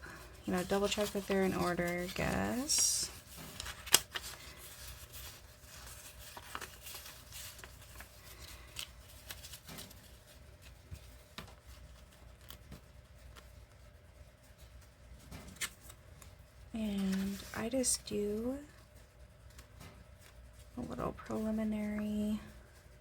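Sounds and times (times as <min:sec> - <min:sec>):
paper rustling: 0:00.0 - 0:13.9, 0:14.5 - 0:18.1.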